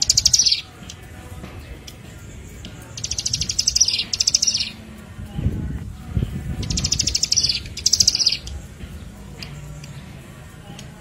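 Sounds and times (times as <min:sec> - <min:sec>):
bird calling in rapid trills: 0:00.0 - 0:01.2, 0:02.2 - 0:04.9, 0:06.6 - 0:09.9
low rumbling noise: 0:04.8 - 0:07.8.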